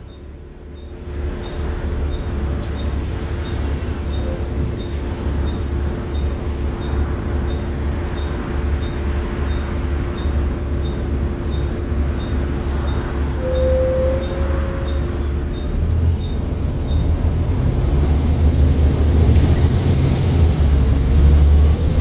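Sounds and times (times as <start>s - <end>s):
bus engine droning: 0.0s - 22.0s
brief whining tone: 10.1s - 17.0s.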